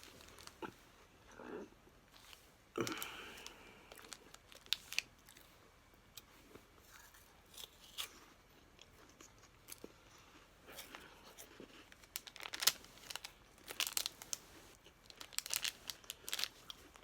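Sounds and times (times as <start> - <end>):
snack wrapper crinkling: 0.0 - 0.7, 2.2 - 5.5, 10.7 - 17.0.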